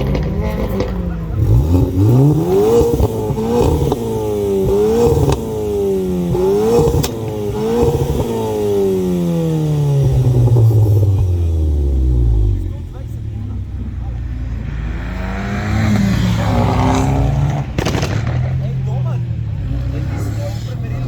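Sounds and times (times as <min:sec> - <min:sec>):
exhaust pops: 0:00.0 - 0:08.6, 0:16.7 - 0:19.2
car engine revving: 0:00.0 - 0:21.0.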